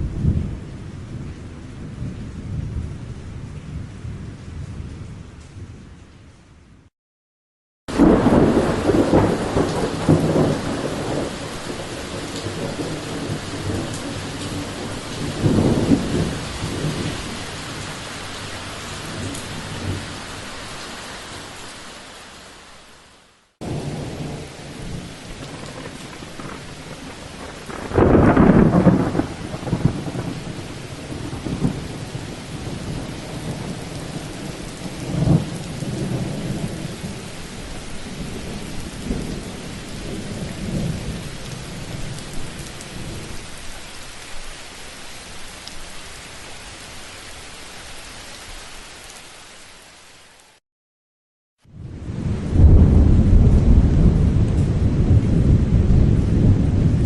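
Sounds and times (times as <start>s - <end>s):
steady rain: 0.0s - 6.9s, 7.9s - 50.6s, 51.6s - 57.0s
thunder rumbling: 7.9s - 20.2s, 23.6s - 37.3s, 38.0s - 43.3s, 51.7s - 57.0s.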